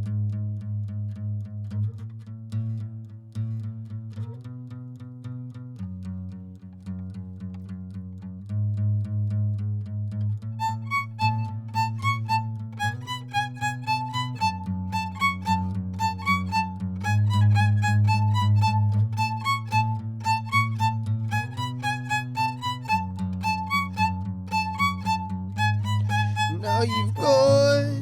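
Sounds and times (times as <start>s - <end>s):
violin quick runs: 10.6s - 28.0s.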